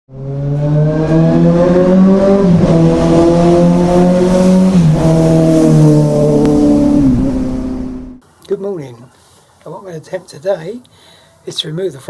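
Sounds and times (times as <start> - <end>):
motorcycle engine accelerating: 0.1 - 8.2.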